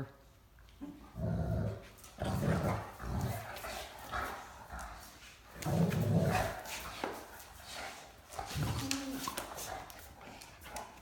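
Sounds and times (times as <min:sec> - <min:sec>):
dogs growling: 0:00.9 - 0:06.8.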